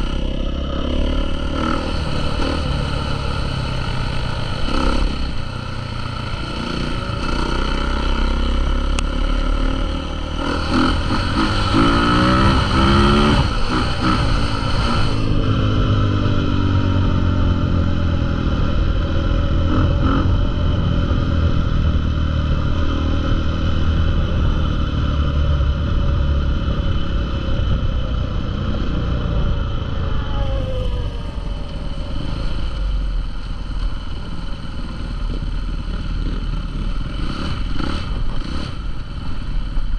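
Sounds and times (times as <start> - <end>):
motocross bikes revving: 0.0 - 5.5, 9.2 - 15.4.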